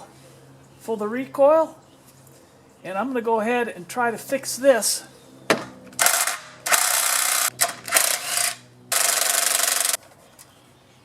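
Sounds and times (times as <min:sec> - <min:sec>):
recoil starter ratcheting whir: 0:05.8 - 0:10.0.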